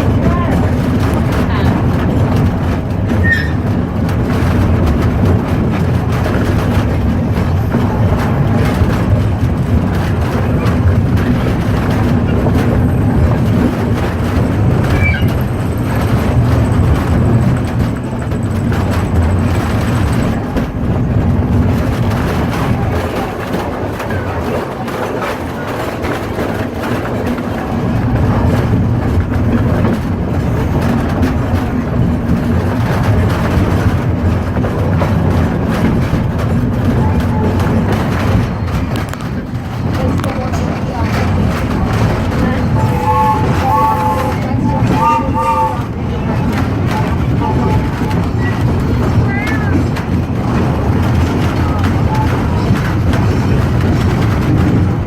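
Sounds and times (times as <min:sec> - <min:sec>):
steam train rumbling and rattling: 0:00.0 - 0:55.0
wheels clicking on track: 0:00.0 - 0:55.0.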